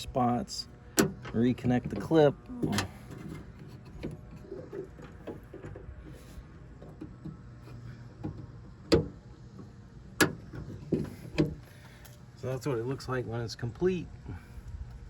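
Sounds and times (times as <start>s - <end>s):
latch rods clicking: 0.9s - 6.0s.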